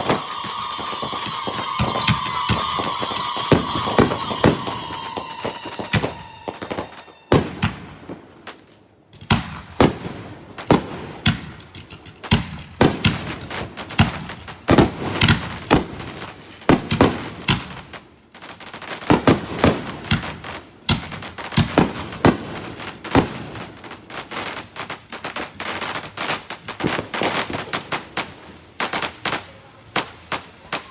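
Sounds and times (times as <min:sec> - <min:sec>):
falling firework whistle: 0:00.0 - 0:07.9, 0:30.6 - 0:30.9
fireworks bangs and crackling: 0:00.0 - 0:30.9.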